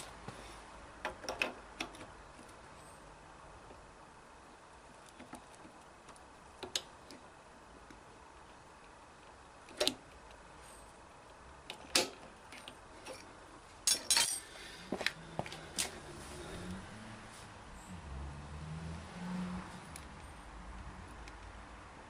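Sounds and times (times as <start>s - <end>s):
metal tools clinking: 13.8s - 14.6s.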